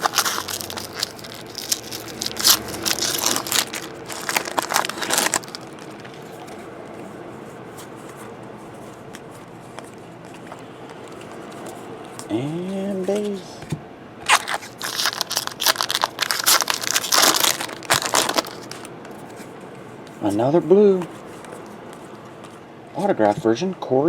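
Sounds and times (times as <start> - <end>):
foil wrapper crinkling and tearing: 0.0 - 6.4, 14.3 - 18.9
faint room hum: 0.0 - 24.0.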